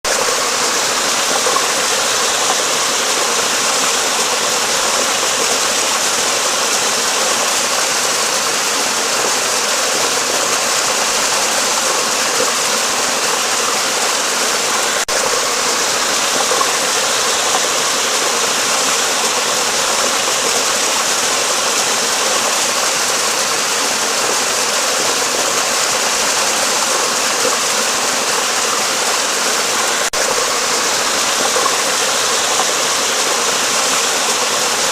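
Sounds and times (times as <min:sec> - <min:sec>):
stream water rushing: 0:00.0 - 0:34.9.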